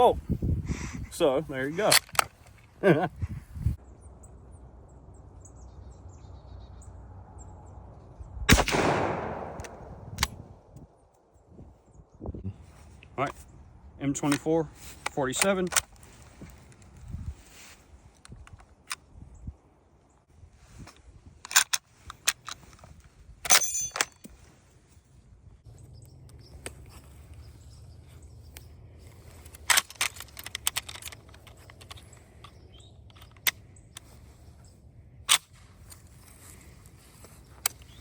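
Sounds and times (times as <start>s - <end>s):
rifle bolt metallic clicks: 1.8s - 2.6s, 8.5s - 10.8s, 14.2s - 16.0s, 21.4s - 24.4s, 29.4s - 34.1s
ringing metallic clink: 23.5s - 24.3s.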